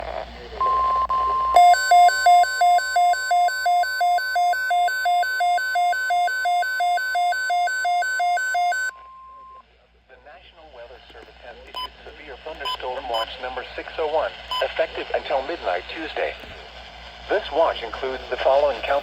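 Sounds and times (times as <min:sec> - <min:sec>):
two-pitch electronic alarm beeping: 0:00.6 - 0:09.6.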